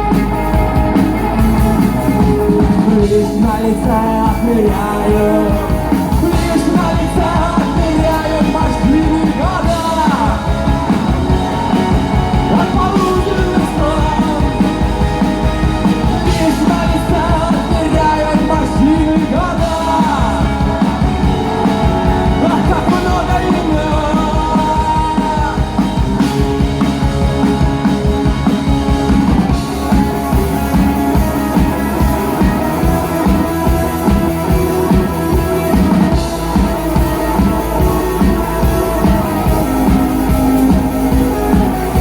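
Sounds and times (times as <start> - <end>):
rock band playing with singing: 0.0 - 42.0.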